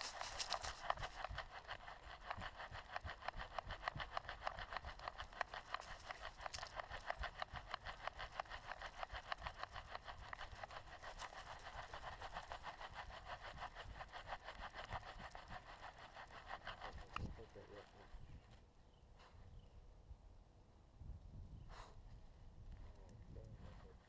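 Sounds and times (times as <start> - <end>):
dog panting fast: 0.0 - 18.2.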